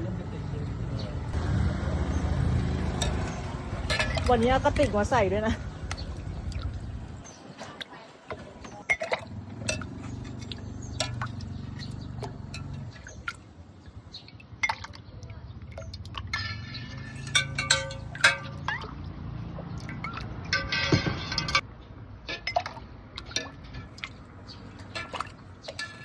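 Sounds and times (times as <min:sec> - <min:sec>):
ice clinking in containers: 0:02.8 - 0:05.2, 0:07.7 - 0:13.4, 0:15.7 - 0:19.3, 0:19.9 - 0:21.6, 0:22.2 - 0:26.0.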